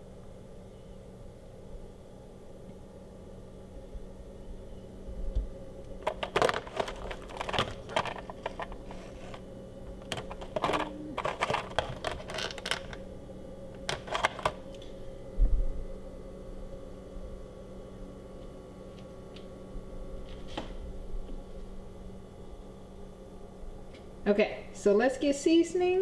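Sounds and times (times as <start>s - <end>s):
faint steady hum: 0.0s - 26.0s
containers clicking and knocking: 6.0s - 9.4s, 10.0s - 13.0s, 13.8s - 14.8s.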